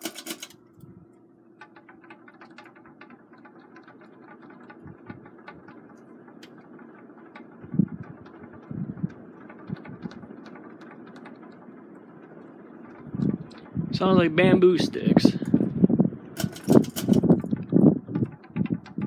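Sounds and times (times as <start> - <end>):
ceiling fan humming: 0.0 - 19.0
fan clicking rattle: 0.0 - 19.0.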